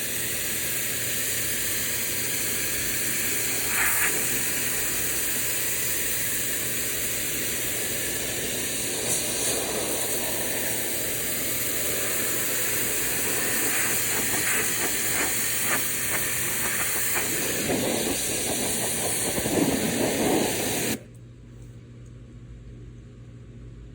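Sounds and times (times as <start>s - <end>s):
pressure washer spraying: 0.0s - 21.0s.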